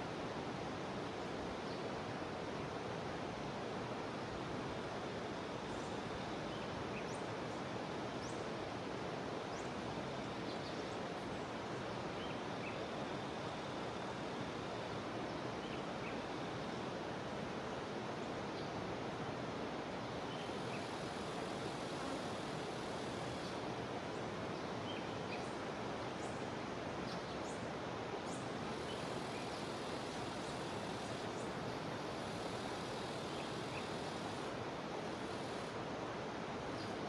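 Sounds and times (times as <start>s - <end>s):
river water rushing: 0.1s - 37.0s.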